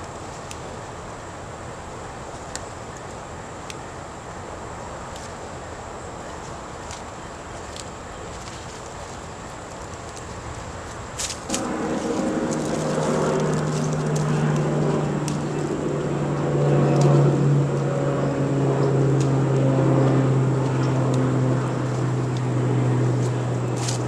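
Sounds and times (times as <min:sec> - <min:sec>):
motor humming: 0:11.5 - 0:24.0.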